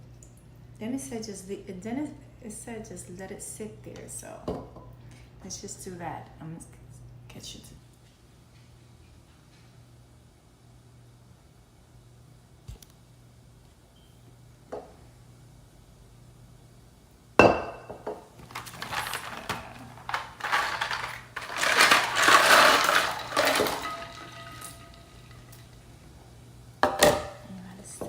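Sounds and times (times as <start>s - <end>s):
dishes and utensils clinking: 17.5s - 25.8s.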